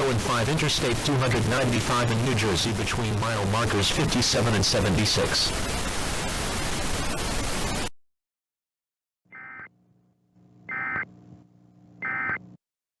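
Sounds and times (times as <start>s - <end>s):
loud static hiss: 0.0s - 7.9s.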